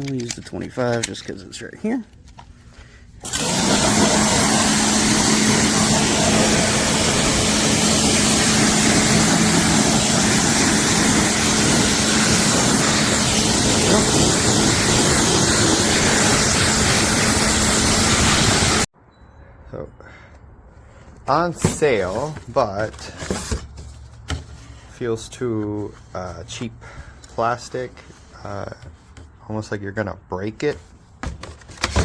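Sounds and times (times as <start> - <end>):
pressure washer water jet hiss: 3.2 - 18.9
washer motor and pump drone: 3.2 - 18.9.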